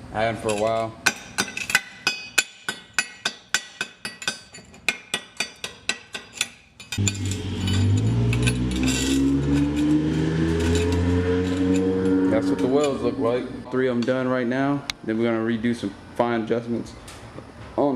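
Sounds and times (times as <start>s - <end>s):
hammer striking steel: 1.0s - 9.9s
steady tone rising in pitch: 7.0s - 13.7s.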